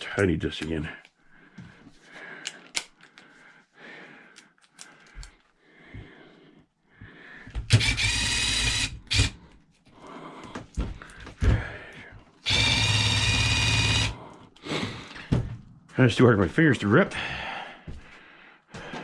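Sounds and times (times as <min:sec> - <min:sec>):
clicks and knocks of handling parts: 0:02.4 - 0:03.3, 0:04.3 - 0:05.6
power drill running: 0:07.7 - 0:09.4, 0:12.4 - 0:14.2.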